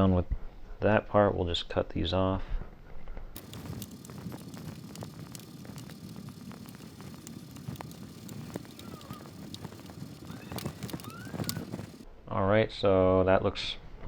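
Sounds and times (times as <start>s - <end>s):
low handling rumble: 3.4s - 12.0s.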